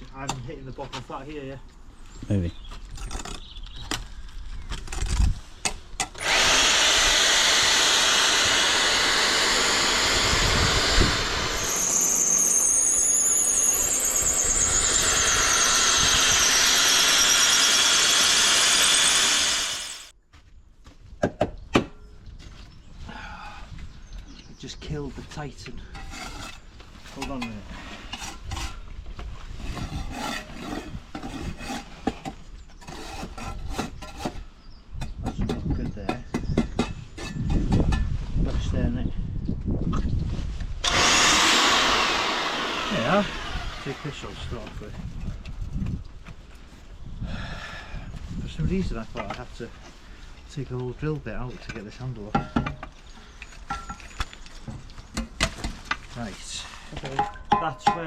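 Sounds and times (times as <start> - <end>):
high-pitched drill whine: 6.2 - 20.1, 40.8 - 44.4
power drill running: 6.2 - 20.1, 40.8 - 44.4.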